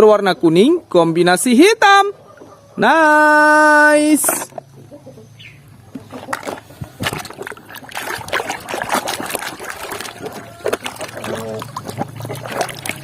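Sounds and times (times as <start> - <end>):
water splashing and trickling: 5.9 - 13.0.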